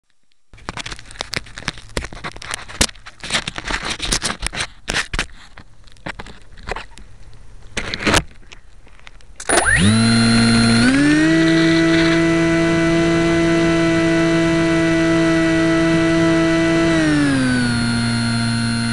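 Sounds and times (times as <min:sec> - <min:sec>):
handling knocks and rustles: 0:00.6 - 0:09.4
electric motor high-pitched whine: 0:09.4 - 0:18.9.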